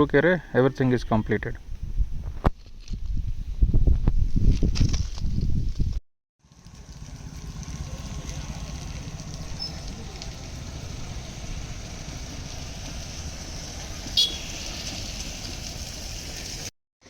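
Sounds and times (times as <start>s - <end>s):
low outdoor rumble: 6.4s - 16.7s.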